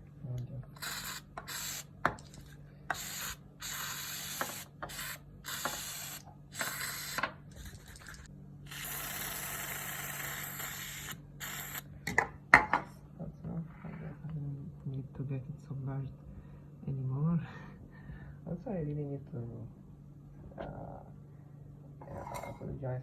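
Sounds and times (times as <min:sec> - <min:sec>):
aerosol spray hissing: 0:00.8 - 0:01.9, 0:02.9 - 0:11.8.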